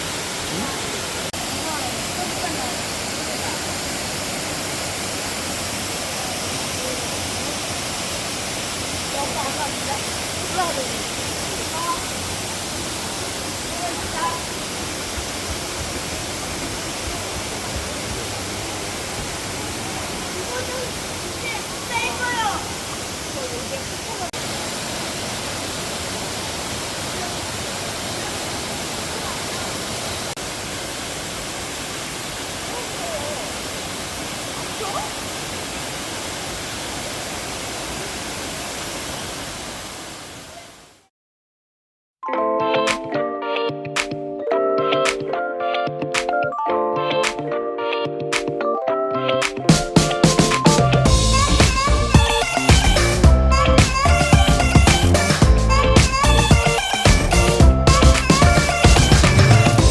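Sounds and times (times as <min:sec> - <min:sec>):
waterfall pouring: 0:00.0 - 0:40.5.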